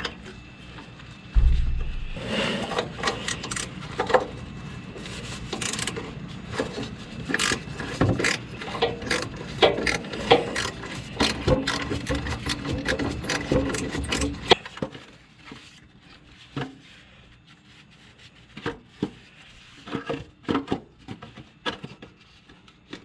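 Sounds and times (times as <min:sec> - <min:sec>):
sharp knock: 0:01.4 - 0:02.2.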